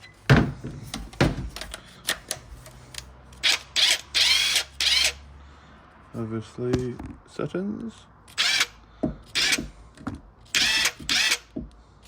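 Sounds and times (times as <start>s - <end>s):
handling clicks and knocks: 0.3s - 3.1s, 6.7s - 7.2s
impact wrench bursts: 3.3s - 5.2s, 8.3s - 9.8s, 10.4s - 11.6s.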